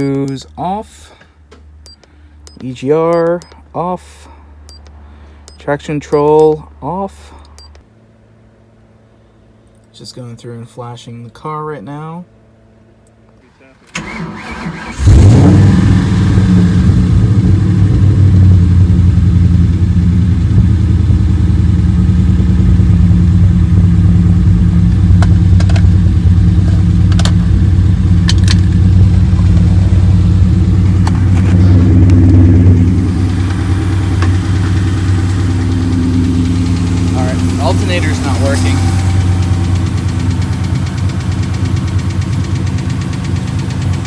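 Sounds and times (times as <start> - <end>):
engine lifter tick: 0.0 - 0.6, 1.5 - 3.6, 4.7 - 6.6, 25.1 - 44.0
car engine high idle: 14.0 - 44.0.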